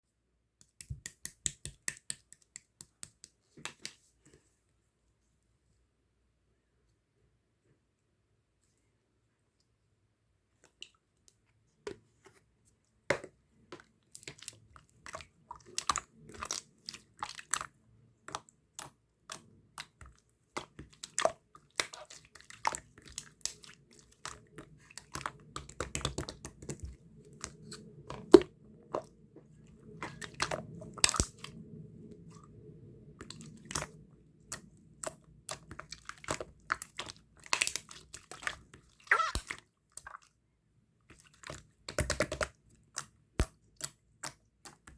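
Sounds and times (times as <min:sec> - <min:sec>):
slime squished by hand: 0:33.2 - 0:40.3.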